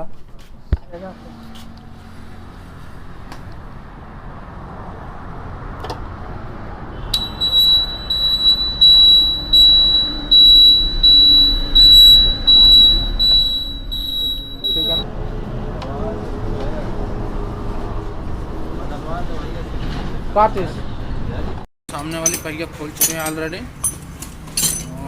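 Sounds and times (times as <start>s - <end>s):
high-pitched electronic beeping: 7.2s - 15.0s.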